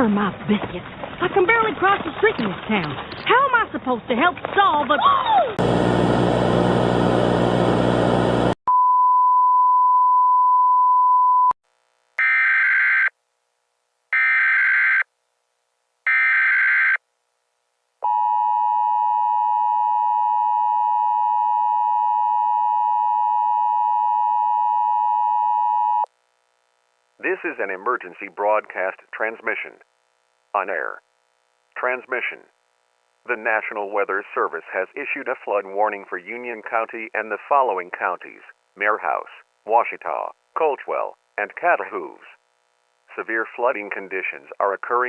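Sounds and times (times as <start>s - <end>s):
buzzing static: 5.6s - 8.6s, 26.1s - 27.5s, 29.7s - 31.8s, 39.4s - 43.2s.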